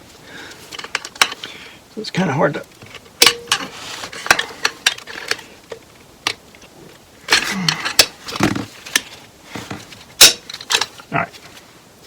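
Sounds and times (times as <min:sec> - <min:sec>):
metal tools clicking and scraping: 0:00.7 - 0:01.6, 0:02.9 - 0:08.2, 0:10.2 - 0:11.1.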